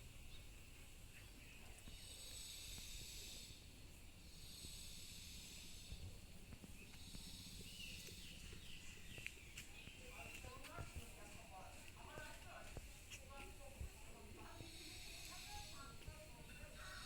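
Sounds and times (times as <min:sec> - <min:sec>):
high hiss: 0:01.8 - 0:09.5, 0:13.9 - 0:17.0
faint bird chirps: 0:04.4 - 0:10.6.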